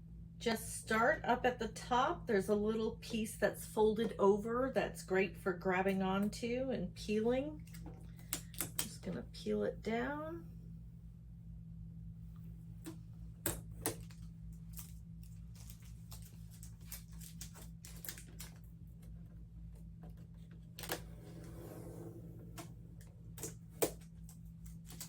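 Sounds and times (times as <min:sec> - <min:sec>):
steady low hum: 0:00.0 - 0:25.0
packing tape peeling crackle: 0:13.8 - 0:21.1, 0:23.0 - 0:25.0.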